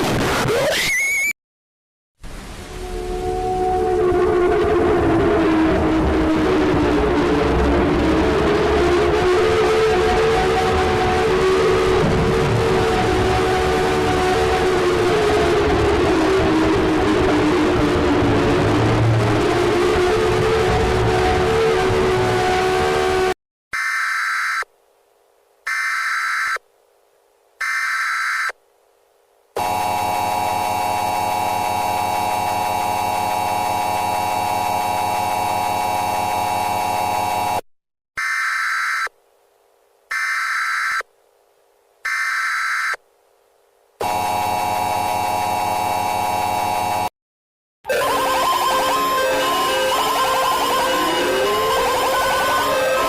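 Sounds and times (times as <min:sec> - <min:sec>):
loud buzzing alert tone: 0:02.8 - 0:24.7, 0:29.6 - 0:37.6, 0:42.1 - 0:43.0, 0:44.0 - 0:47.1, 0:47.9 - 0:53.0
digital data bursts: 0:25.7 - 0:26.6, 0:27.6 - 0:28.6.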